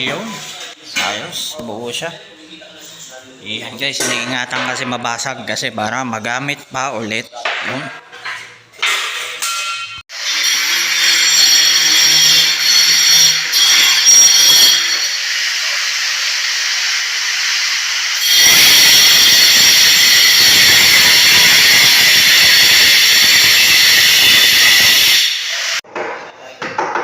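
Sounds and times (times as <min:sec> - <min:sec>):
angle grinder on concrete: 0:10.1 - 0:25.8.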